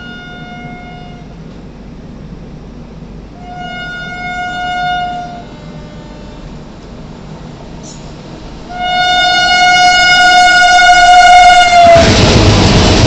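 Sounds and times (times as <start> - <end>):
locomotive horn blasts: 0.0 - 1.4, 3.3 - 6.8, 8.7 - 12.2
train rumbling: 0.0 - 13.0.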